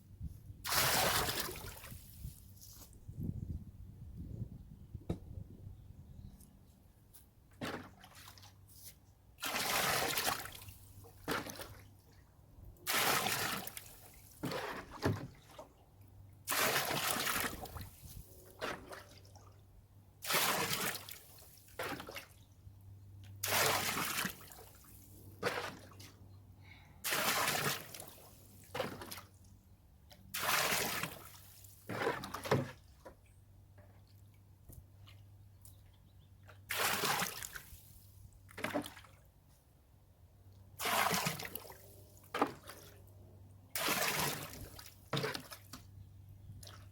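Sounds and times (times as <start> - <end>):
water pouring into a trash can: 9.4 - 10.6, 12.9 - 15.0, 16.5 - 17.9, 23.4 - 24.4, 27.0 - 28.1, 30.3 - 32.6, 36.7 - 37.7, 40.8 - 41.7, 43.8 - 45.4.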